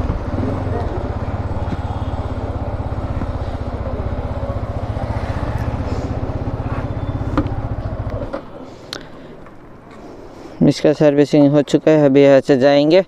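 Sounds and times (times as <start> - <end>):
motorcycle engine idling: 0.0 - 8.6.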